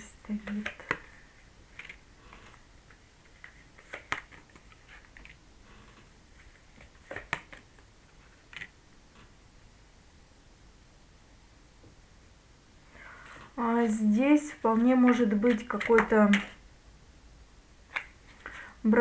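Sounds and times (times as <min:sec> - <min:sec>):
cards clicking and tapping: 0:00.2 - 0:08.8, 0:14.8 - 0:16.6, 0:17.9 - 0:18.7
cards snapping: 0:00.4 - 0:06.1, 0:06.7 - 0:07.8, 0:17.9 - 0:18.6.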